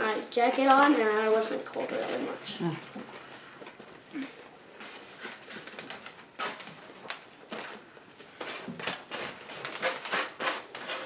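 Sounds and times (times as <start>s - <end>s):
packaging clicks and crinkles: 4.8s - 10.9s.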